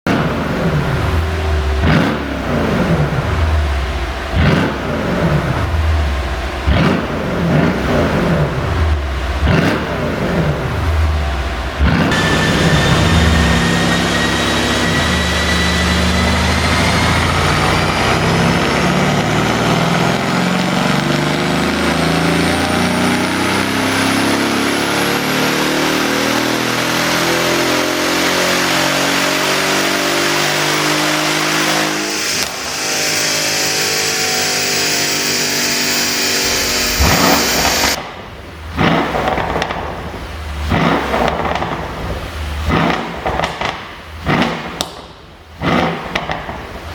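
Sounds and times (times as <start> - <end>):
car engine revving: 0.0 - 45.0
sharp exhaust crack: 11.8 - 22.4, 30.7 - 46.9
thin high whine: 12.1 - 18.6, 31.9 - 38.0.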